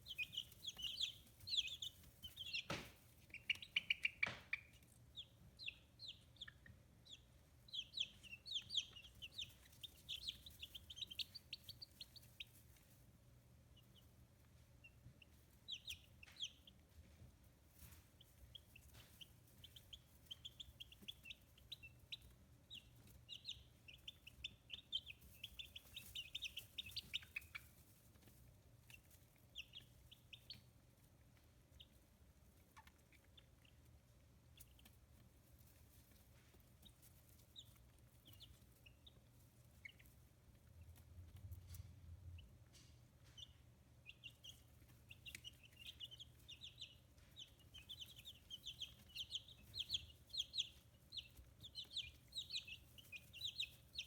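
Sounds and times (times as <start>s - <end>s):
chicks peeping: 0.0s - 54.0s.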